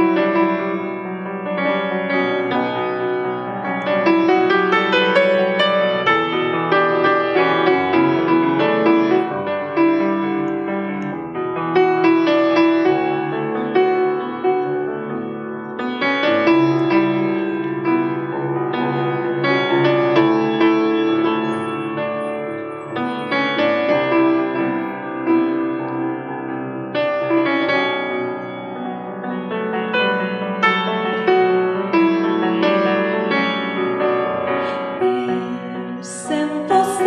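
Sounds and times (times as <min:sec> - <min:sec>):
piano playing chords and melody: 0:00.0 - 0:37.0.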